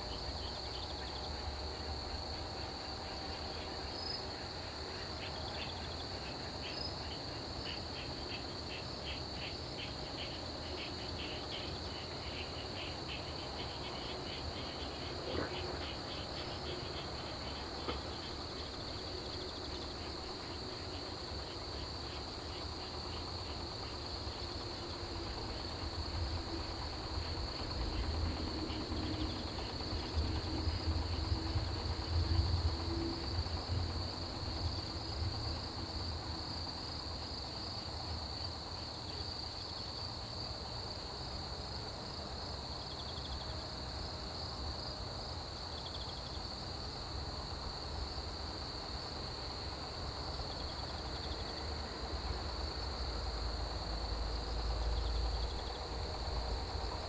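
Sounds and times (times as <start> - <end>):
cricket trill: 0.0 - 57.0.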